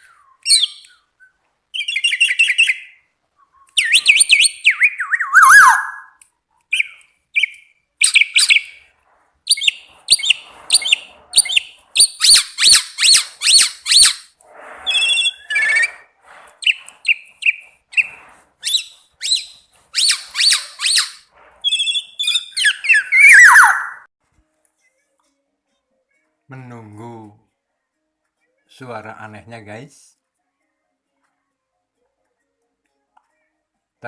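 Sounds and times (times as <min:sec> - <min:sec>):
bird chirping and whistling: 0:00.0 - 0:01.1, 0:01.8 - 0:06.1, 0:06.7 - 0:08.8, 0:09.5 - 0:14.3, 0:14.9 - 0:16.0, 0:16.6 - 0:24.0.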